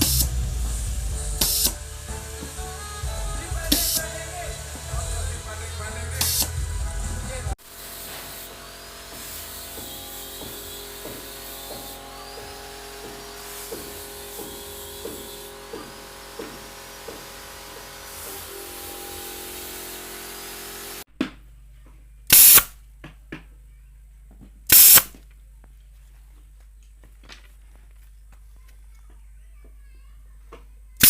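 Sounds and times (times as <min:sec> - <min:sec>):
pneumatic nail gun firing: 0:00.0 - 0:05.4, 0:06.0 - 0:06.6, 0:07.6 - 0:21.1, 0:22.3 - 0:22.8, 0:24.7 - 0:25.2.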